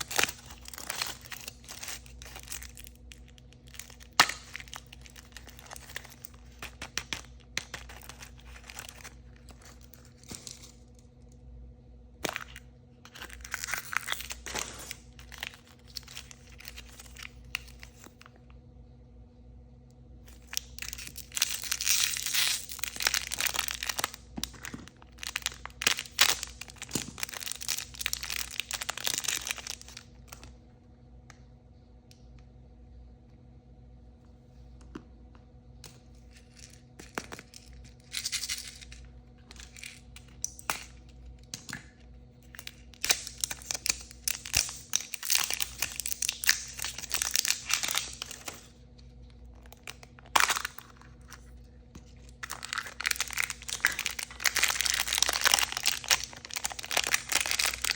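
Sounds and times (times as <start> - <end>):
packaging crinkling: 0.0 - 11.1, 12.2 - 18.3, 20.3 - 30.5, 42.4 - 57.9.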